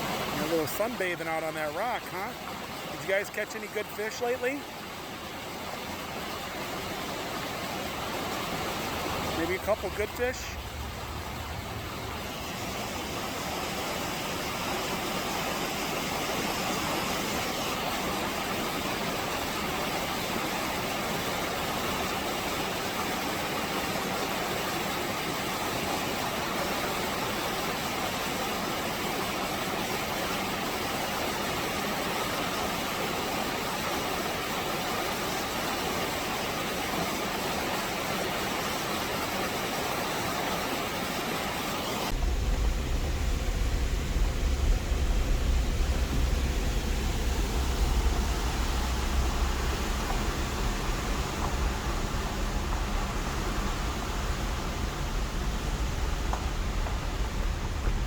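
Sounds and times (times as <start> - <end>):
car engine and tyre noise: 0.0 - 27.0, 41.3 - 58.0.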